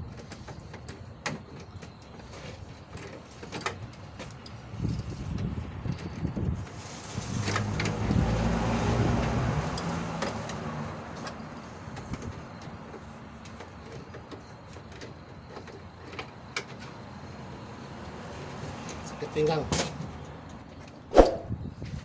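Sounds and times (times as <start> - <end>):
vehicle engine passing by: 7.2 - 11.2, 21.1 - 21.6.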